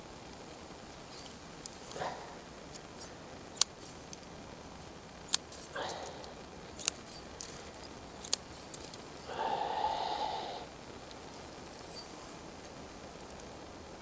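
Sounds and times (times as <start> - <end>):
breathy rush of air: 1.9 - 2.6, 5.7 - 6.6, 9.2 - 11.0.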